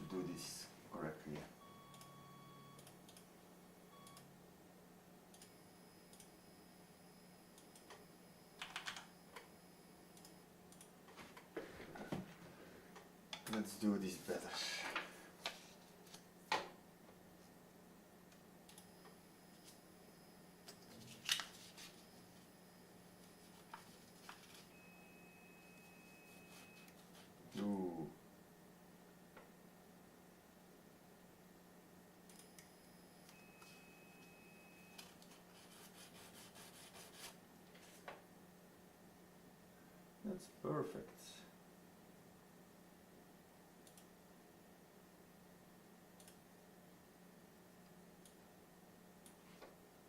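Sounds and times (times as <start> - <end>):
faint steady hum: 0.0 - 50.0.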